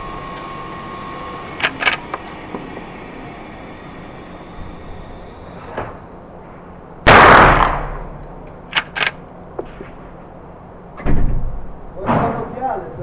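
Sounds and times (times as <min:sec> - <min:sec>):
rifle shot: 0:01.6 - 0:02.0, 0:07.0 - 0:09.2
rifle lever metallic clicks: 0:01.6 - 0:02.2, 0:08.5 - 0:09.3.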